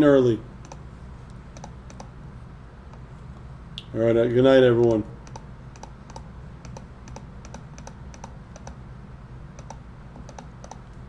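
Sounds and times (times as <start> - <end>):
computer keyboard key clicks: 0.6 - 0.8, 1.5 - 2.1, 4.8 - 8.8, 9.6 - 11.0.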